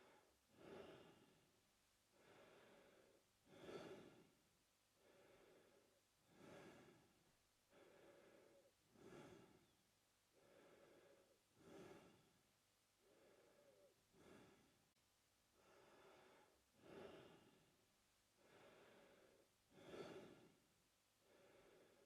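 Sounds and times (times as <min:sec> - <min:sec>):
man breathing through mouth: 0:05.0 - 0:07.1, 0:07.7 - 0:09.7, 0:10.4 - 0:12.3, 0:18.4 - 0:20.5.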